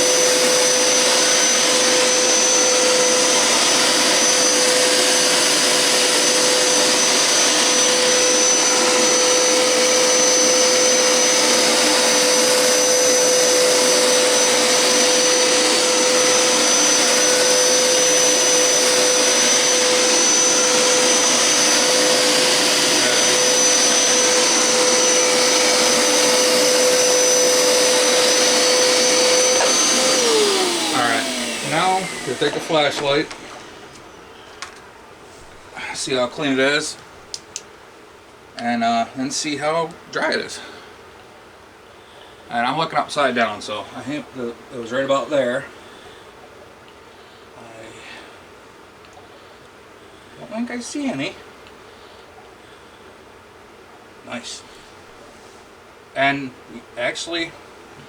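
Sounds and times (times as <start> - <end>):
carpet cleaner motor rushing: 0.0 - 34.9
high whine: 12.2 - 34.7.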